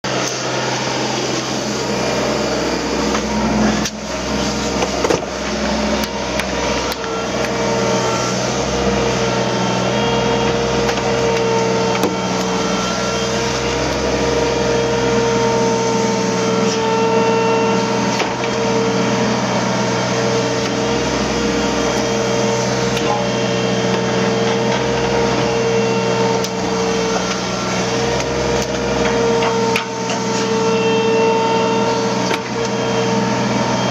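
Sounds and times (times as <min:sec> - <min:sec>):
excavator engine whining: 0:00.1 - 0:33.9.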